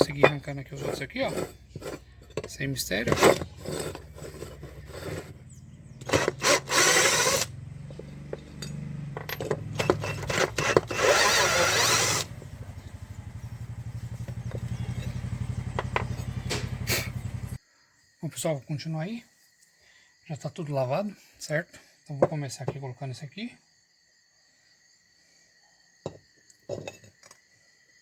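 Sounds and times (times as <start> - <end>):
metal tools clinking and knocking: 0.0 - 5.4, 6.0 - 12.2, 14.3 - 16.7
harsh bursts: 6.0 - 7.5, 9.7 - 12.4.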